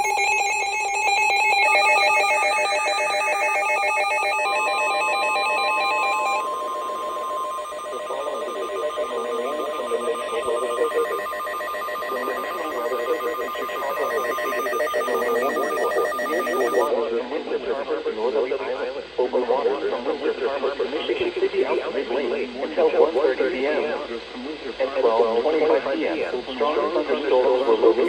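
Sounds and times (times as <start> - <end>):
long steady alert tone: 0.0 - 16.9
warbling digital data chirps: 0.0 - 16.9
wavering low sounds: 4.6 - 16.9.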